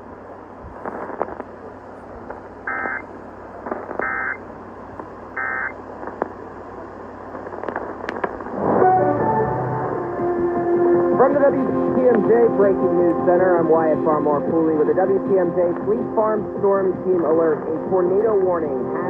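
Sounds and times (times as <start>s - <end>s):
radio broadcast hiss: 0.5s - 8.7s
buzzy digital data bursts: 2.7s - 3.0s, 4.0s - 4.4s, 5.4s - 5.7s.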